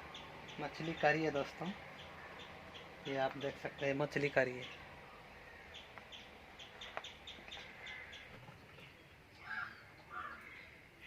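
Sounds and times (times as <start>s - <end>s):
harsh bird calls: 0.0s - 11.0s.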